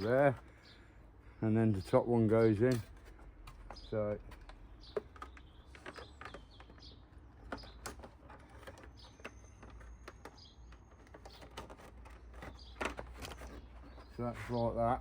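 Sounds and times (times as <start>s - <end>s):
birds chirping: 0.0s - 15.0s
plastic panel clicks and knocks: 2.7s - 14.1s.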